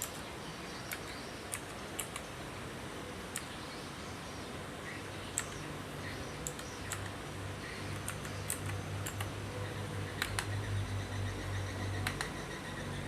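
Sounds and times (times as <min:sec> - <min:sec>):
steady low hum: 0:00.0 - 0:13.0
mechanical keyboard key clicks: 0:00.9 - 0:02.3, 0:07.9 - 0:09.3, 0:10.2 - 0:10.6, 0:12.0 - 0:12.4.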